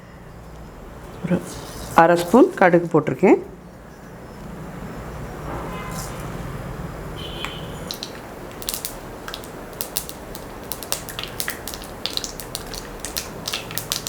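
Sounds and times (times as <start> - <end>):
mustard seeds popping in oil: 7.4 - 14.0
low sizzle: 7.8 - 14.0.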